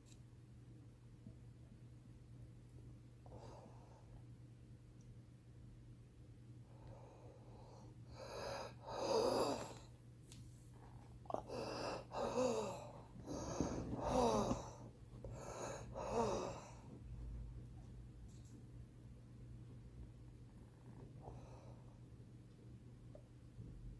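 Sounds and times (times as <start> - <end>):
wheezing breathing: 6.8 - 9.9, 11.3 - 16.9.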